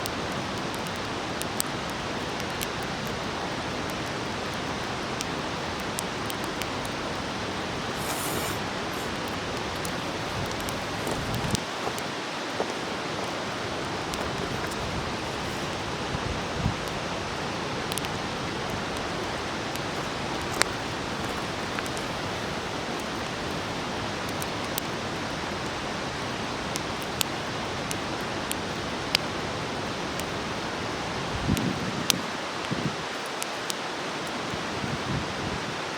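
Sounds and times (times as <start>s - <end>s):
campfire crackling and popping: 0.0s - 35.1s.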